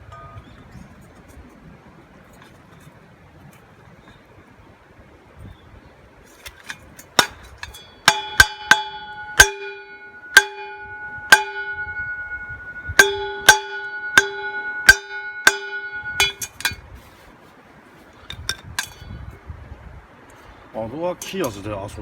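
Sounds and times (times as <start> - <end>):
strikes on ringing metal: 0.0 - 0.5, 7.2 - 16.8, 18.5 - 19.1.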